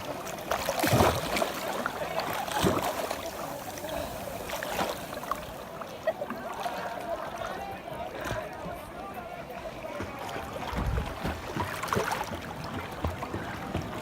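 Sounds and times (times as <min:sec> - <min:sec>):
water sloshing from swimming: 0:00.0 - 0:14.0
loud splashes: 0:00.6 - 0:05.8.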